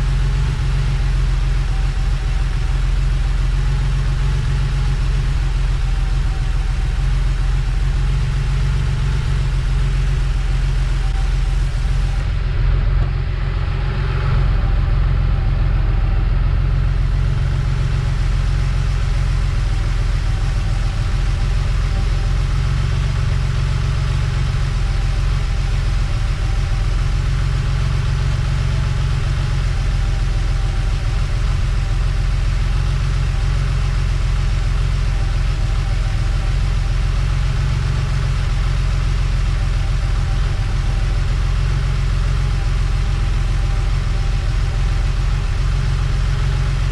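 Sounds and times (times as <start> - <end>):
car engine running steadily: 0.0 - 46.9.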